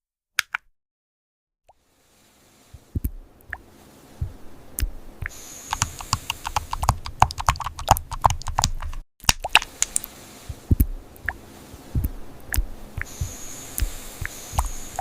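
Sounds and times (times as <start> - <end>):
computer keyboard typing: 5.2 - 10.1.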